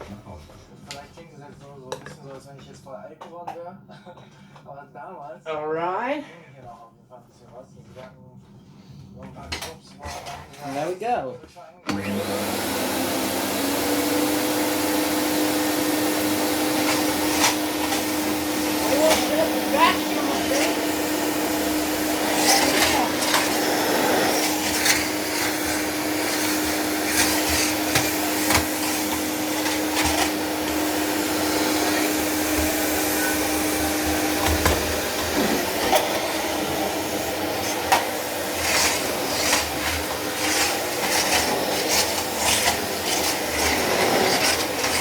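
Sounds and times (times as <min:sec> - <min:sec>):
vacuum cleaner running: 0:11.9 - 0:45.0.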